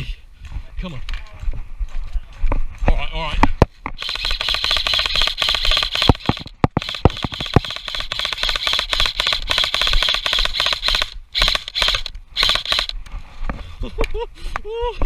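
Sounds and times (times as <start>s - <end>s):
gearbox whine: 4.0s - 12.9s
airsoft gun full-auto bursts: 4.0s - 13.0s.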